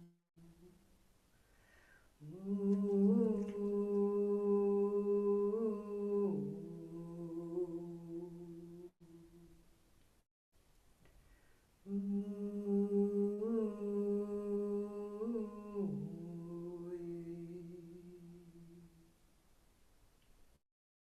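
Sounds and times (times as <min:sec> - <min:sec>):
person humming long notes: 0:02.2 - 0:09.5, 0:11.9 - 0:19.0.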